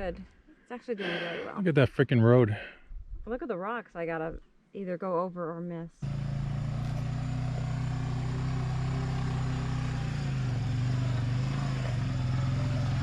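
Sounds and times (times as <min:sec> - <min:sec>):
atv engine running: 0:06.0 - 0:13.0.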